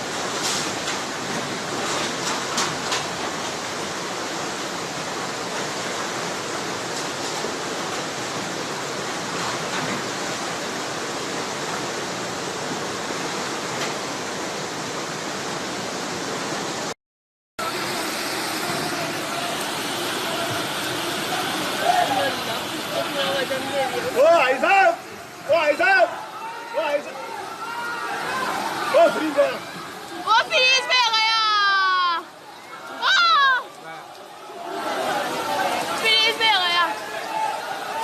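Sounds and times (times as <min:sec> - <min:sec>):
floodwater rushing: 0:00.0 - 0:17.0, 0:17.6 - 0:38.0.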